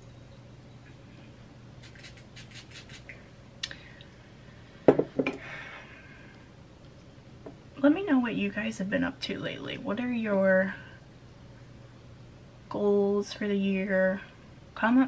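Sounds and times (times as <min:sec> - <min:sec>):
low room hum: 0:00.0 - 0:15.0
knocks on hard surface: 0:04.9 - 0:05.4.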